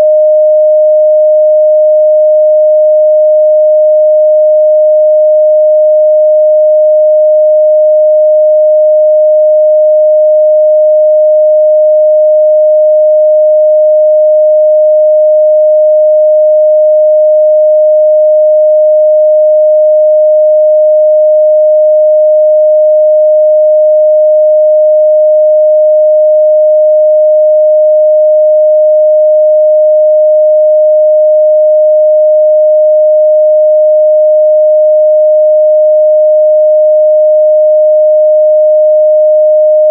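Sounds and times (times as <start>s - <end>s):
sine wave test tone: 0.0s - 39.9s.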